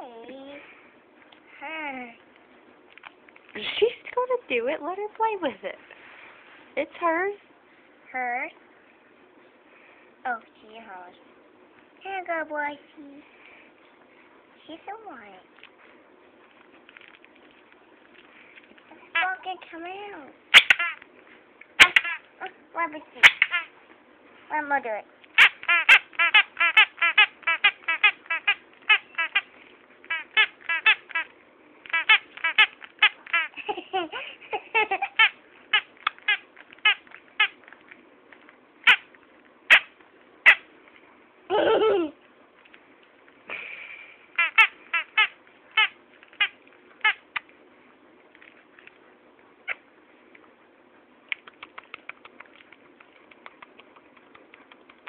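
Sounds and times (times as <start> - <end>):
squeaky dog toy squeaking: 19.1 - 19.6, 20.5 - 21.0, 21.8 - 22.3, 23.2 - 23.7, 25.4 - 29.5, 30.1 - 31.3, 31.9 - 33.6, 35.1 - 37.6, 38.8 - 39.1, 39.7 - 39.9, 44.4 - 47.2.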